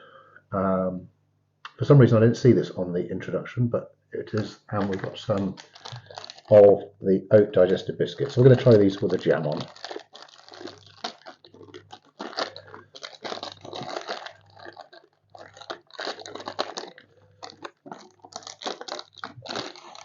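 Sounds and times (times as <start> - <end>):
wrapper crackling and crunching: 4.2 - 6.8, 7.5 - 20.0.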